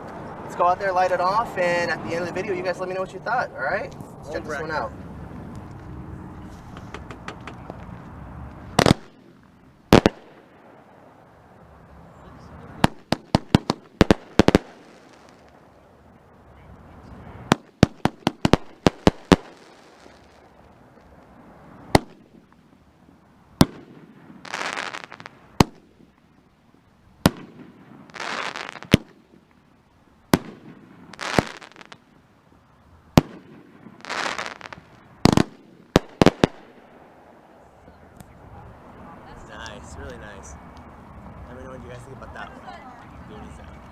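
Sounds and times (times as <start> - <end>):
firework rushing hiss: 3.8 - 22.6, 23.6 - 26.2, 27.2 - 29.5, 30.3 - 32.1, 33.1 - 37.7
firework shells bangs: 6.4 - 8.0, 8.7 - 11.1, 12.8 - 15.6, 17.4 - 20.6, 21.9 - 22.6, 23.6 - 26.2, 27.2 - 29.6, 30.3 - 32.1, 33.1 - 37.6.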